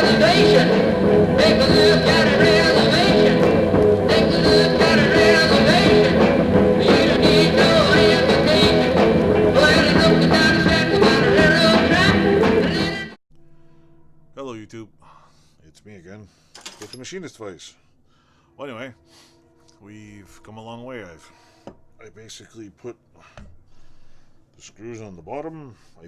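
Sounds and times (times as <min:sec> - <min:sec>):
rock music with steady beat: 0:00.0 - 0:14.3.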